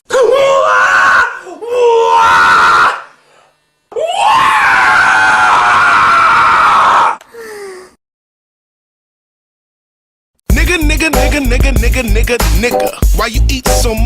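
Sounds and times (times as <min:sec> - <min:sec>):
person crying out: 0:00.1 - 0:03.1
person screaming: 0:00.1 - 0:03.2, 0:03.9 - 0:07.5.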